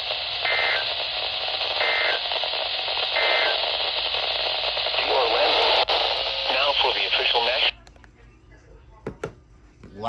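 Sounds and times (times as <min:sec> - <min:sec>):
radio hiss: 0:00.0 - 0:07.8.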